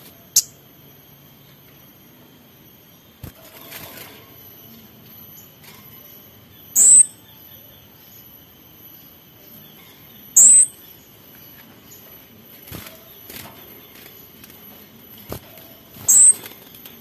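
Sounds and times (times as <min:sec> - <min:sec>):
faint bird chirps: 0:00.0 - 0:17.0
songbird sharp high calls: 0:00.3 - 0:00.6, 0:06.6 - 0:07.9, 0:10.1 - 0:11.1, 0:16.0 - 0:16.5.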